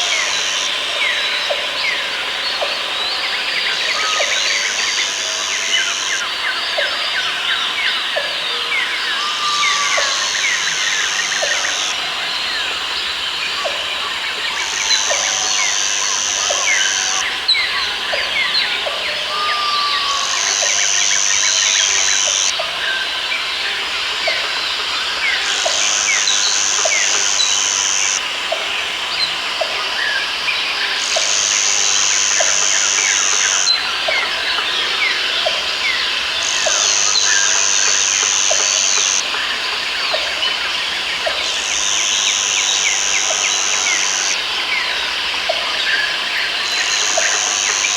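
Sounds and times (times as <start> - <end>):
high steady buzz: 14.5 - 17.3, 20.2 - 22.5, 25.4 - 28.4, 30.9 - 33.9, 35.6 - 39.3, 41.2 - 44.5, 46.6 - 47.9.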